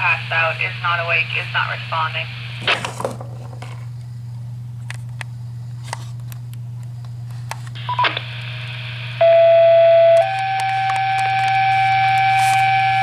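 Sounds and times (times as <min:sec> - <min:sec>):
low radio hum: 0:00.0 - 0:13.0
faint radio clicks: 0:06.2 - 0:08.9.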